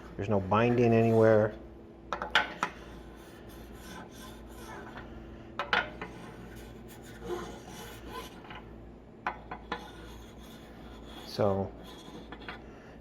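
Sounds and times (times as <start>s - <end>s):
metal scraping on metal: 5.9s - 8.6s, 9.5s - 12.6s.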